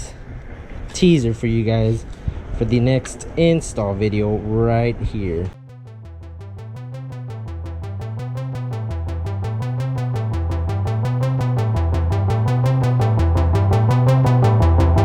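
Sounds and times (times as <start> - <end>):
electronic synthesizer music: 5.6 - 15.0.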